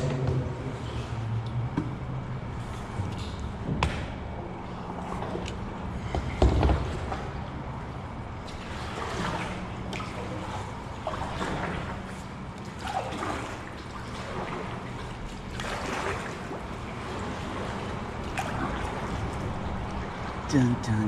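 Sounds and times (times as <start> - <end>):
paddle swishing in water: 6.7 - 20.5.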